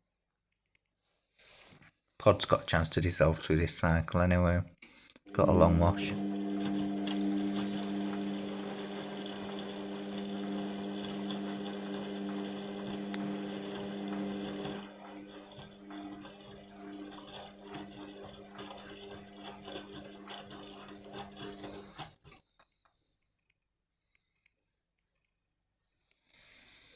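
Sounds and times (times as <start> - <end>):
washing machine humming: 5.3 - 22.0.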